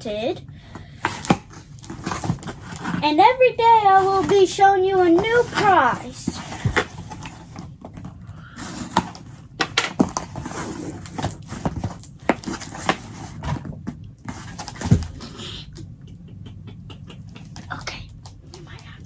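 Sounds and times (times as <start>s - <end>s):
objects being handled: 0.8s - 3.1s, 3.8s - 15.4s.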